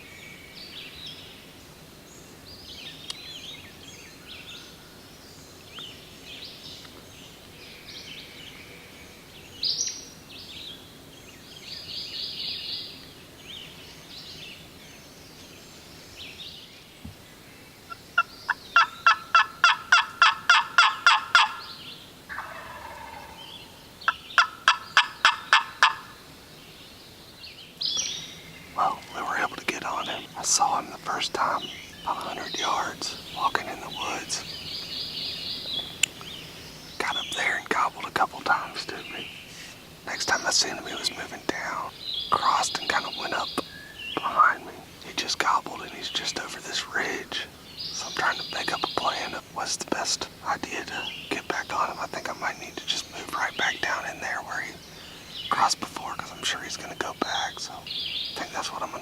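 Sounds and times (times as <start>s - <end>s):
songbirds chirping: 0.0s - 59.0s
warbling turkey call: 17.9s - 21.6s, 22.3s - 23.5s, 24.1s - 26.2s
turkey calls: 17.9s - 26.2s, 28.0s - 59.0s.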